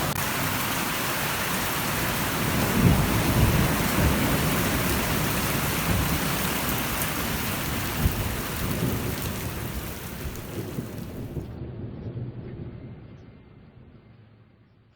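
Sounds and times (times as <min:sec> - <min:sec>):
heavy rain pouring: 0:00.0 - 0:11.5
low thunder rumble: 0:00.0 - 0:11.8.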